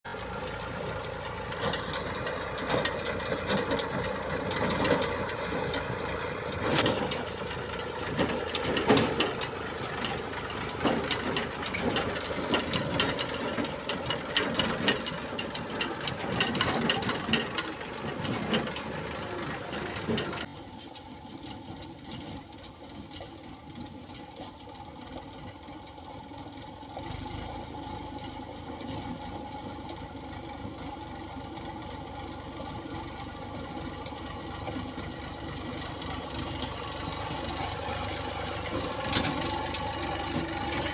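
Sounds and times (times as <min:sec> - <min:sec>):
diesel engine running: 0:00.0 - 0:40.9
metallic clatter and knocks: 0:00.2 - 0:20.9, 0:32.1 - 0:40.9.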